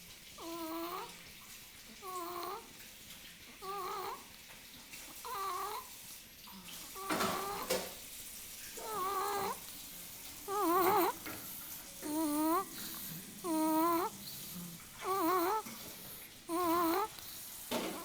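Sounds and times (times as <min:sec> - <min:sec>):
high-pitched wavering snores: 0:00.4 - 0:01.1, 0:02.0 - 0:02.7, 0:03.6 - 0:04.2, 0:08.8 - 0:09.6, 0:10.5 - 0:11.2, 0:12.0 - 0:15.7, 0:16.5 - 0:18.0.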